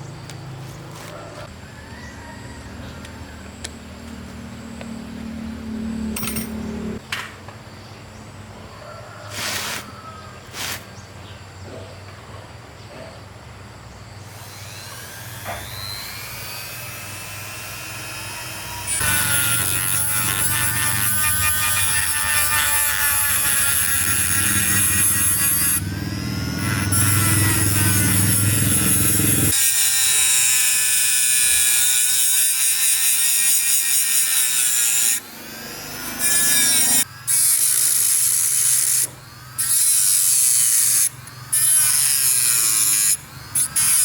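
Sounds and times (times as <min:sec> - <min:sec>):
power tool whining: 0:14.3 - 0:44.0.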